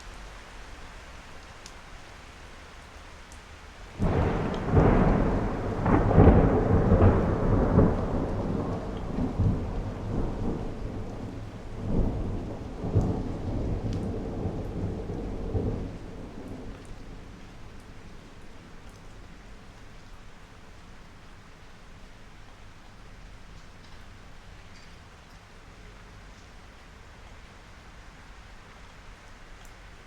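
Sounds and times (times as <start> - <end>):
steady rain: 0.0 - 30.0
thunder rolling and cracking: 4.0 - 18.8.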